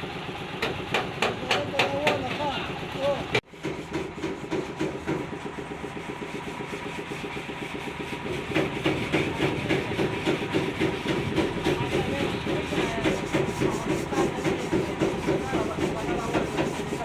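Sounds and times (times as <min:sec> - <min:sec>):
machine with fast pulsing beat: 0:03.5 - 0:17.0.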